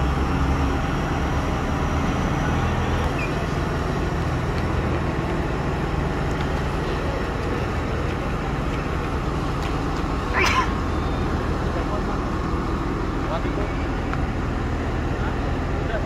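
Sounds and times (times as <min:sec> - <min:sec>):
engine running: 0:00.0 - 0:16.0.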